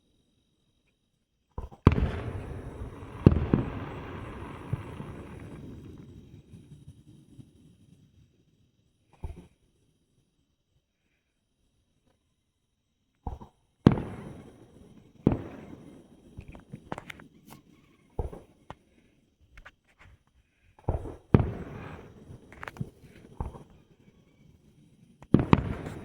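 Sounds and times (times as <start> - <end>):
fireworks booms: 1.6 - 7.3, 13.3 - 18.8, 20.8 - 26.0
fireworks pops and crackles: 1.6 - 8.4, 9.2 - 9.6, 13.2 - 26.0.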